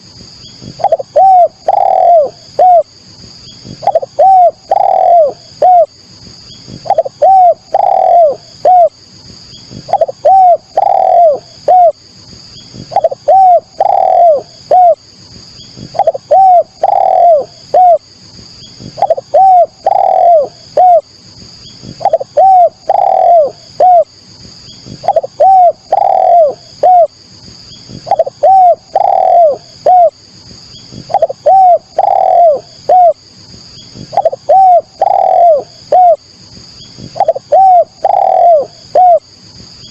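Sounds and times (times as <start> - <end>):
dove cooing: 0.6 - 2.9, 3.6 - 5.9, 6.7 - 9.0, 9.7 - 12.0, 12.7 - 15.0, 15.8 - 18.0, 18.8 - 21.1, 21.8 - 24.1, 24.9 - 27.2, 27.9 - 30.2, 30.9 - 33.2, 34.0 - 36.2, 37.0 - 39.3.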